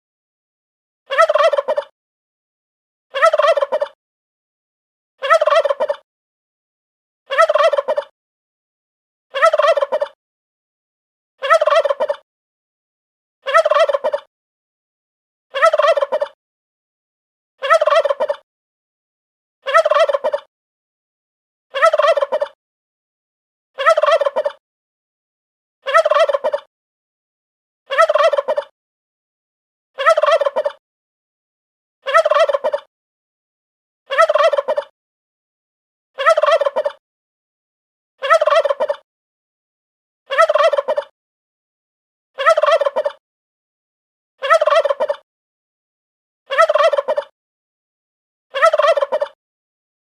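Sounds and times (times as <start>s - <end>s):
turkey gobbling: 1.1s - 1.9s, 3.2s - 4.0s, 5.2s - 6.0s, 7.3s - 8.1s, 9.4s - 10.2s, 11.4s - 12.2s, 13.5s - 14.3s, 15.6s - 16.4s, 17.6s - 18.4s, 19.7s - 20.5s, 21.8s - 22.6s, 23.8s - 24.6s, 25.9s - 26.7s, 27.9s - 28.7s, 30.0s - 30.8s, 32.1s - 32.9s, 34.1s - 34.9s, 36.2s - 37.0s, 38.2s - 39.0s, 40.3s - 41.1s, 42.4s - 43.2s, 44.4s - 45.2s, 46.5s - 47.3s, 48.6s - 49.4s.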